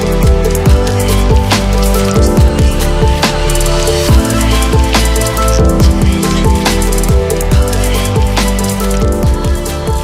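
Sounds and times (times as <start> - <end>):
electronic music with fast beat: 0.0 - 10.0.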